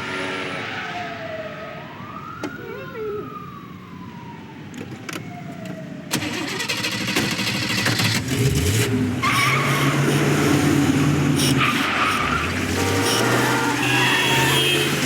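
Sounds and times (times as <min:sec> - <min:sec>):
car engine starting and running: 0:04.7 - 0:15.0.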